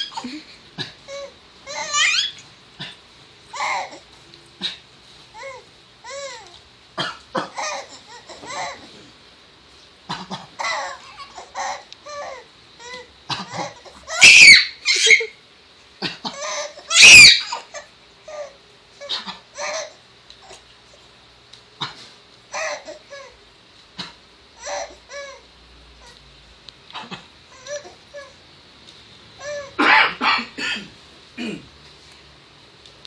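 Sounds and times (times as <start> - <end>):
baby laughing and babbling: 0.0 - 6.6, 7.4 - 9.1, 10.2 - 15.4, 16.1 - 20.6, 22.5 - 23.4, 24.0 - 26.2, 27.0 - 28.4, 29.4 - 30.0
man coughing: 29.8 - 31.7.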